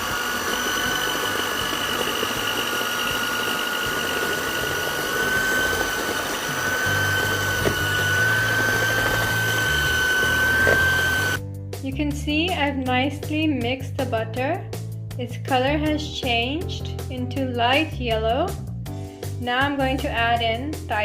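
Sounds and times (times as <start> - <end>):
electric hand mixer whining: 0.0 - 11.4.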